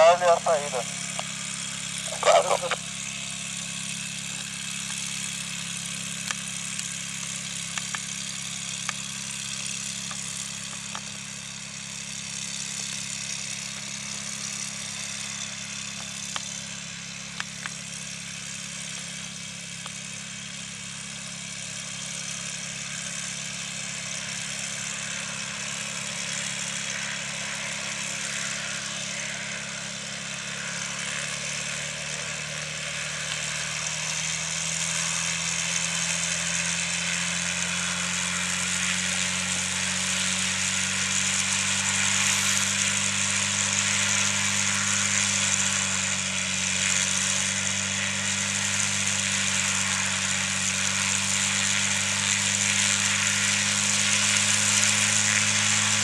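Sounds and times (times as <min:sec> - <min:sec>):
jet engines idling: 0:00.0 - 0:11.9.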